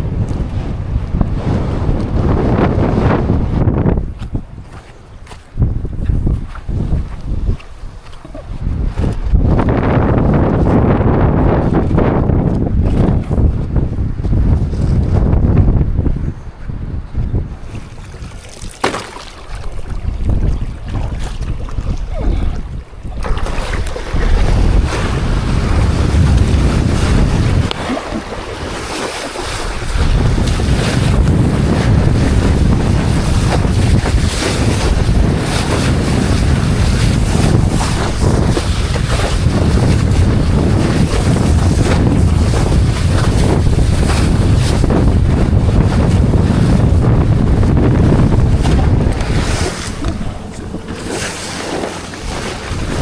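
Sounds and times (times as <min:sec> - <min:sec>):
wind buffeting microphone: 0:00.0 - 0:53.0
water rushing and splashing: 0:17.6 - 0:53.0.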